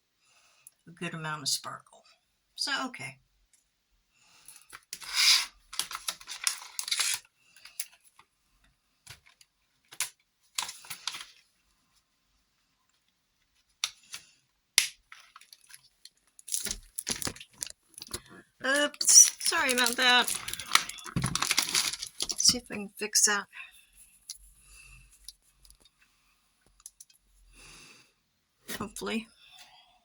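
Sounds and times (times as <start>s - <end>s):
rustling and crinkling: 4.6s - 12.1s, 15.0s - 22.8s, 23.6s - 27.4s.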